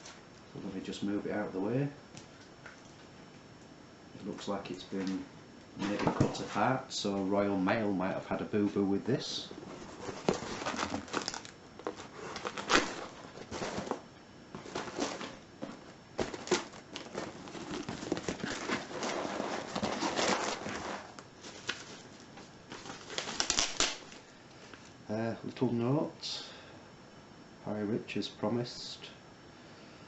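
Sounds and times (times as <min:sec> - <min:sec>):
packaging crinkling and rustling: 0:09.6 - 0:24.9
packaging tearing: 0:09.8 - 0:14.0, 0:14.6 - 0:21.9, 0:22.7 - 0:24.2.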